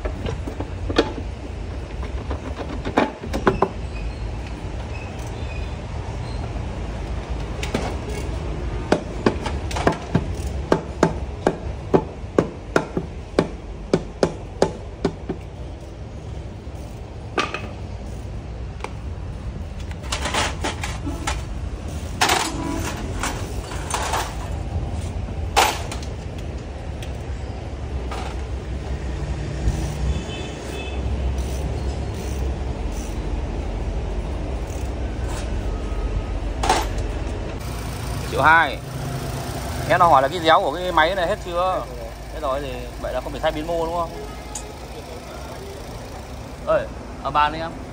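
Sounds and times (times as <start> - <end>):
knocks and clanks: 0.0 - 3.8, 7.4 - 15.5, 17.3 - 17.8, 19.8 - 21.5, 22.2 - 24.7, 25.4 - 26.4.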